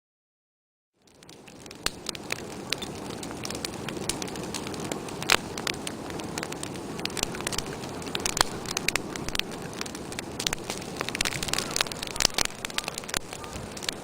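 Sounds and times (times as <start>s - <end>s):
wood fire crackling and popping: 1.0s - 14.0s.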